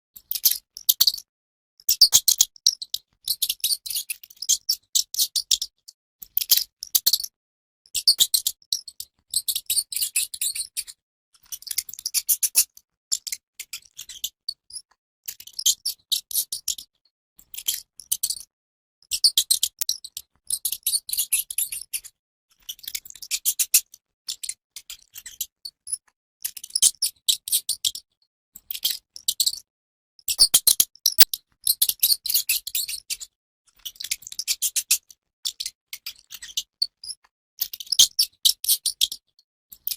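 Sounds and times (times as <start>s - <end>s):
mouse clicking chatter: 30.4s - 31.3s.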